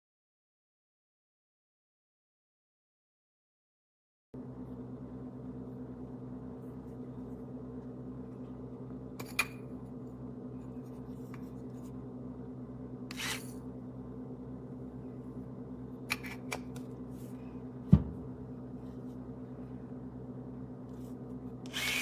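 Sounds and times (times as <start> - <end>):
steady low hum: 4.4 - 22.0.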